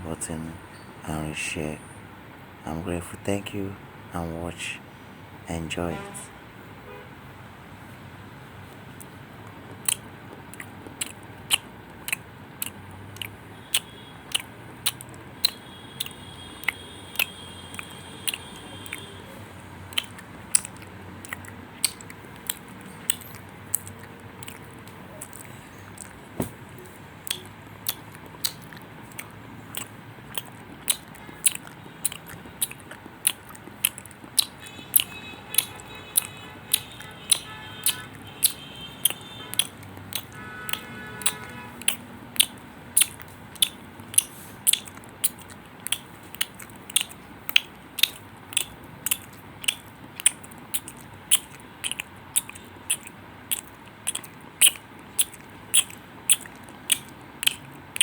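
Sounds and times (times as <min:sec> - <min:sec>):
sharp short clicks: 0:19.9 - 0:24.6, 0:27.3 - 0:58.0.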